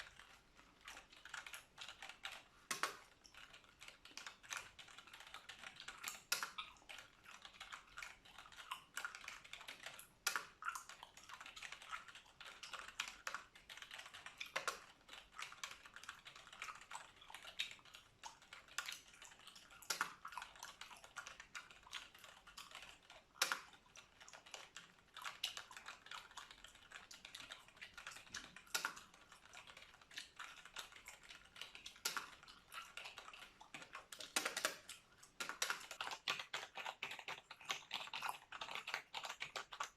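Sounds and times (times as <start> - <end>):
keyboard typing: 0.0 - 39.9.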